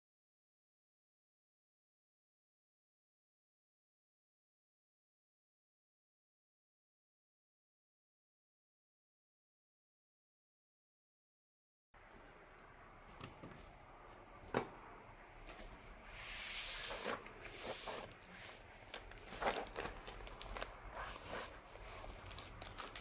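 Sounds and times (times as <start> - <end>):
packaging rustling: 16.8 - 23.0.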